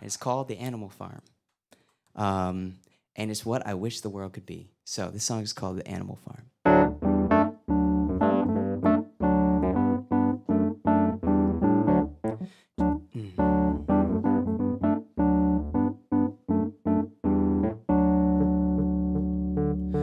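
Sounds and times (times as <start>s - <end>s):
keyboard piano chords: 6.6s - 20.0s.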